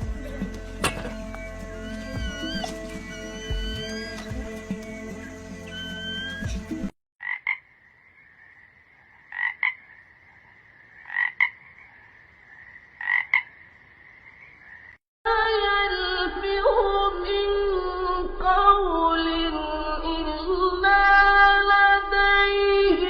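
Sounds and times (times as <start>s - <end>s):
steady high drone: 0.0s - 6.9s.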